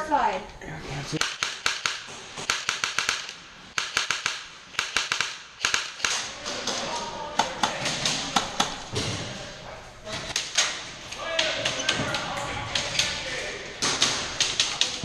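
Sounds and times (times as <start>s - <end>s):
airsoft guns firing: 1.2s - 6.8s, 13.8s - 14.9s.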